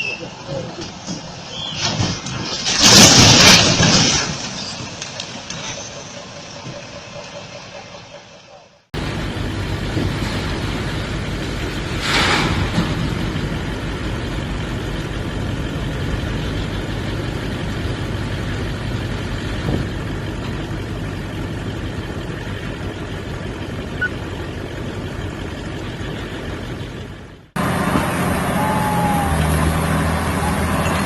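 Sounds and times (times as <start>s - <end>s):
engine with whistle-like tone: 0.0s - 0.6s, 4.6s - 9.7s, 21.1s - 31.0s
heavy vehicle engine running: 3.5s - 31.0s.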